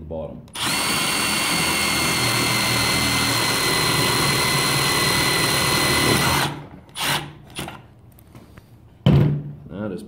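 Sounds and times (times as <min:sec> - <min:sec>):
power drill whining: 0:00.5 - 0:07.9.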